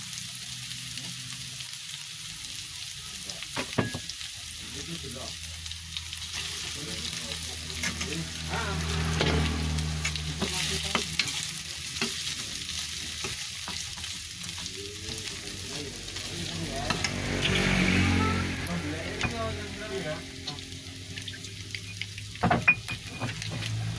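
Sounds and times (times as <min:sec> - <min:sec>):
food sizzling in hot oil: 0:00.0 - 0:23.9
spatula scraping a pan: 0:07.7 - 0:15.4, 0:22.6 - 0:23.8.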